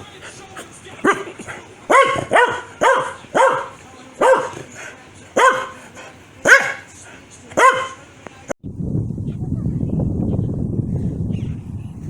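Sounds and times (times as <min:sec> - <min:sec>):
dog barking: 0:01.0 - 0:04.7, 0:05.4 - 0:05.8, 0:06.4 - 0:06.9, 0:07.5 - 0:08.0.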